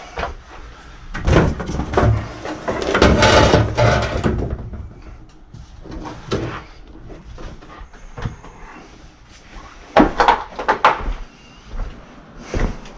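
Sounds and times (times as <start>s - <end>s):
objects knocking and clunking: 1.1s - 8.6s, 10.0s - 11.1s.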